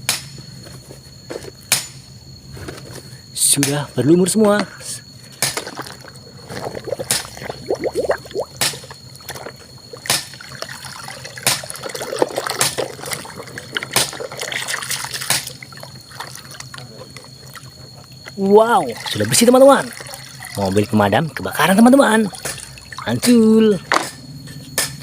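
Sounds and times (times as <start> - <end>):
water trickling: 5.7 - 23.7
sharp water splash: 9.9 - 16.4.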